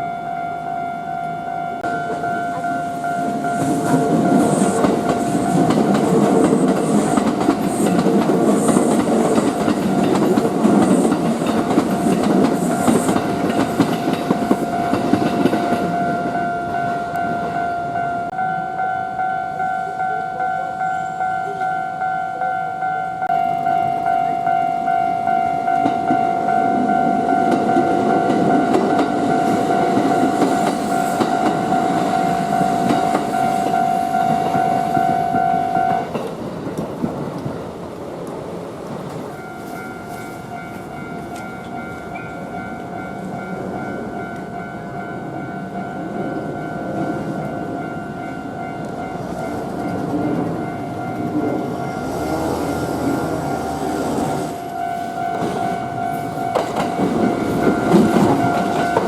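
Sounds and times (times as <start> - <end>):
level crossing bell ringing: 0.0 - 6.0, 14.2 - 36.1, 54.6 - 59.0
electric train passing: 0.0 - 59.0.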